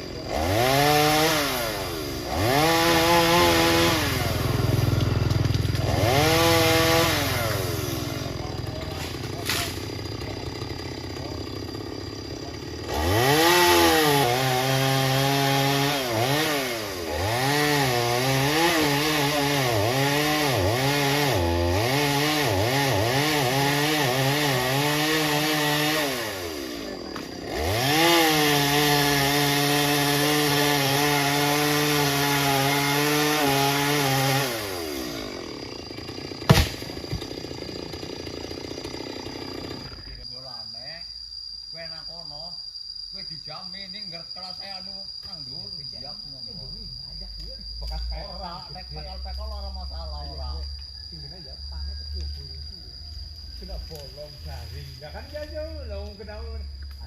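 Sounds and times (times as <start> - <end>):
chainsaw engine revving: 0.0 - 40.1
sharp knock: 36.5 - 36.8.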